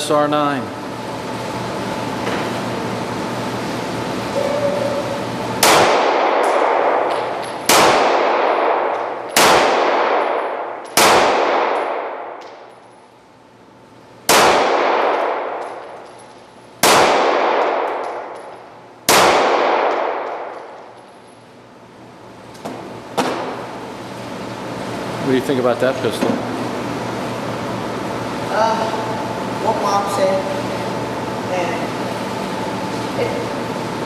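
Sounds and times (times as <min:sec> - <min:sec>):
pistol shots ringing: 0:05.6 - 0:12.8, 0:14.3 - 0:21.0.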